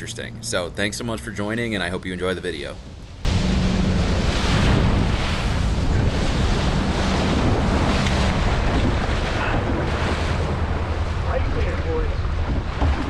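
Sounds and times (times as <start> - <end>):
low motor hum: 2.8 - 13.0
wind buffeting microphone: 2.8 - 13.0
water rushing past boat hull: 2.9 - 13.0.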